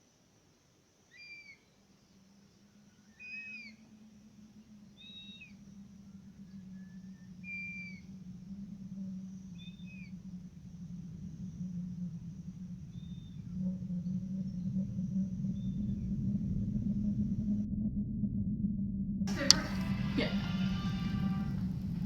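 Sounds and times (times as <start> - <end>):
bird whistled calls: 1.1 - 1.8, 2.9 - 3.9, 5.0 - 5.7, 6.3 - 8.4, 19.3 - 22.0.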